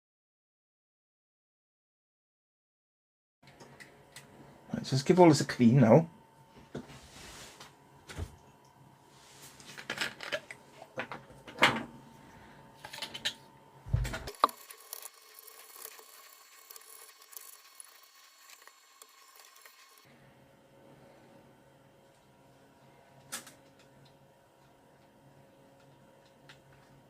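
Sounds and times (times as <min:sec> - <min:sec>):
scraping strokes on plastic clock: 0:14.3 - 0:20.1.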